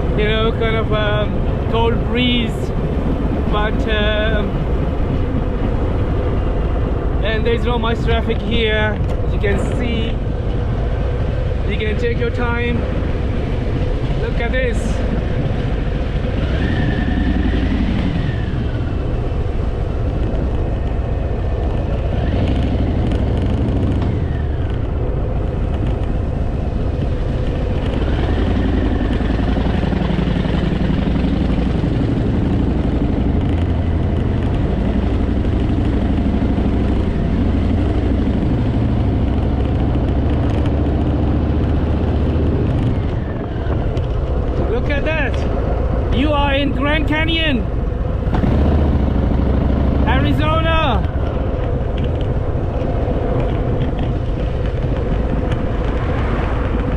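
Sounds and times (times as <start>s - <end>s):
motorcycle engine revving: 12.4s - 44.6s, 47.6s - 56.9s.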